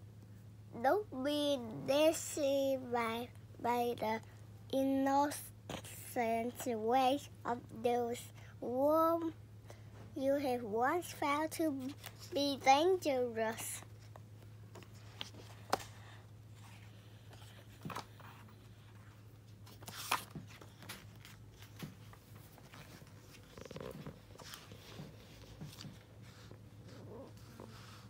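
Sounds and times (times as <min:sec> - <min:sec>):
steady low hum: 0:00.0 - 0:28.0
soft rustles: 0:13.5 - 0:28.0.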